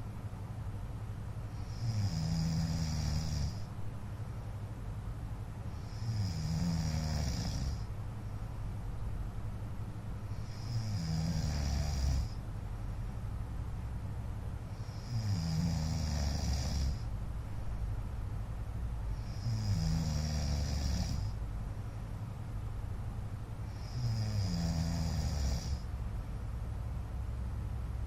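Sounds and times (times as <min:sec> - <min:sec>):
man snoring: 0:01.5 - 0:03.7, 0:05.7 - 0:07.9, 0:10.3 - 0:12.4, 0:14.7 - 0:17.1, 0:19.1 - 0:21.4, 0:23.7 - 0:25.9.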